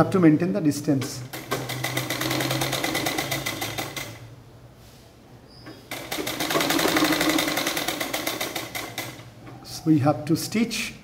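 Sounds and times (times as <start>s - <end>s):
sewing machine stitching: 1.1s - 4.2s, 5.9s - 9.3s.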